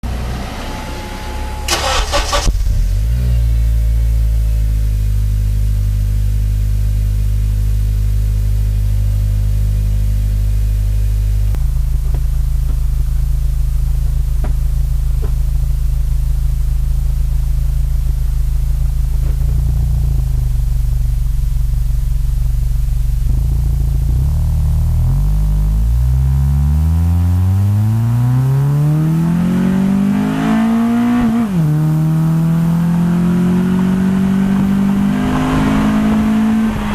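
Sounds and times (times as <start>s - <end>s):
car engine starting and idling: 0.0s - 36.9s
starter motor cranking: 1.7s - 2.8s.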